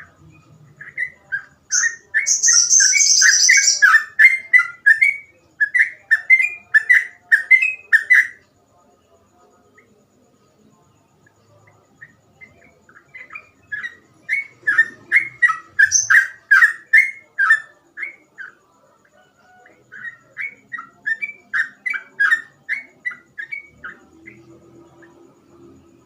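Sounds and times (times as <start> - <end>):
bird singing whistled notes: 0.8 - 8.4, 19.5 - 25.2.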